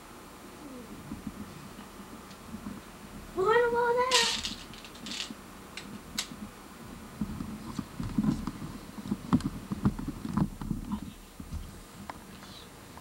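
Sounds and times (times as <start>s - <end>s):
plastic game pieces clicking on board: 4.1s - 5.3s.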